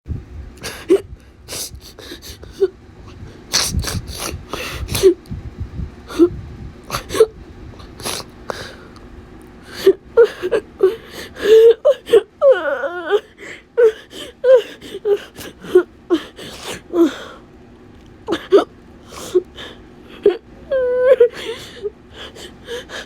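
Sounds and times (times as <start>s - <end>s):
person sobbing: 0.6s - 5.2s, 9.7s - 17.4s, 18.3s - 23.0s.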